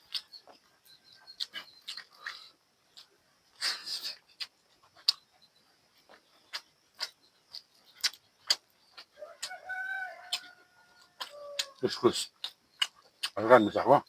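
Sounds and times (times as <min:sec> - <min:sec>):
close-miked chewing: 0:00.0 - 0:13.6
wet mouth clicks and crunches: 0:01.3 - 0:03.1, 0:06.1 - 0:09.6, 0:12.4 - 0:13.4.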